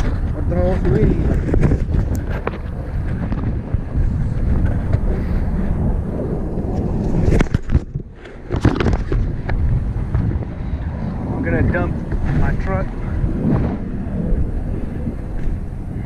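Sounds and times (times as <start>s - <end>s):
wind buffeting microphone: 0.0s - 16.0s
knocks and rustles: 7.0s - 10.4s.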